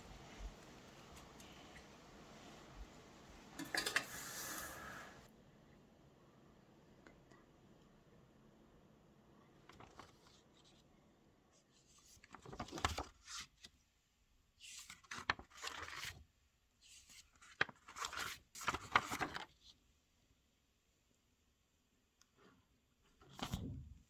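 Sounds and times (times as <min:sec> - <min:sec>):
paper rustling and crinkling: 0:09.6 - 0:10.9, 0:11.8 - 0:13.8, 0:14.7 - 0:16.2, 0:16.9 - 0:19.6.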